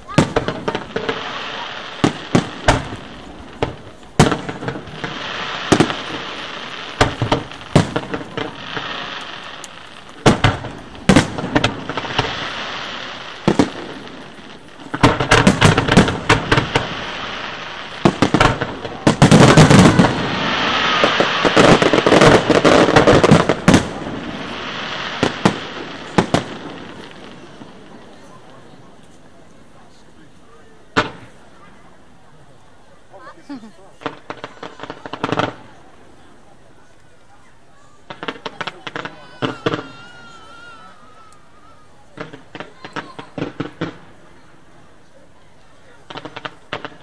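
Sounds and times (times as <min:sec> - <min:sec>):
firework bangs: 0:00.0 - 0:31.8, 0:33.5 - 0:36.5, 0:37.8 - 0:44.9, 0:45.7 - 0:47.0
firework crackle and hiss: 0:00.0 - 0:47.0.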